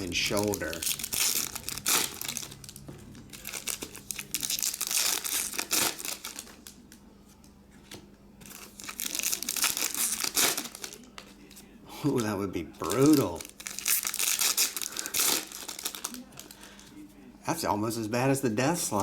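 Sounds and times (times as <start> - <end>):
wrappers tearing and crinkling: 0.0 - 7.0, 8.4 - 11.3, 12.1 - 16.8.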